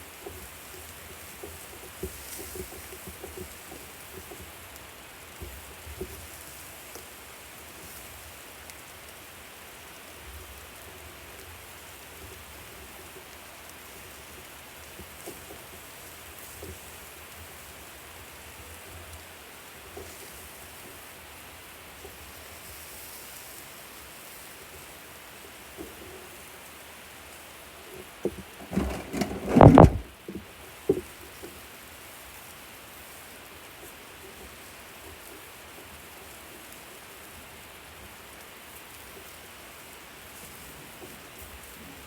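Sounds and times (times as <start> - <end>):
food sizzling on a grill: 0.0 - 28.2, 30.6 - 42.0
knocks and rustling: 28.3 - 30.4.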